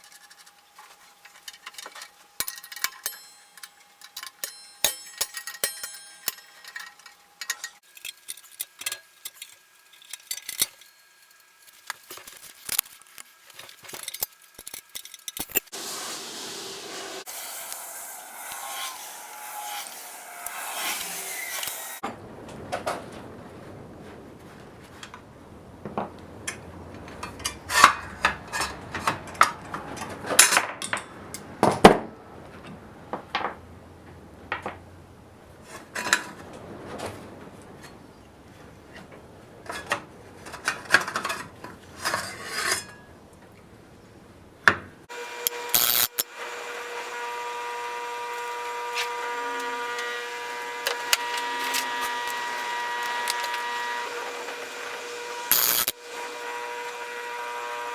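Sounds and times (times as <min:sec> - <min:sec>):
tools clinking and scraping: 0:00.0 - 0:15.7, 0:27.1 - 0:31.5.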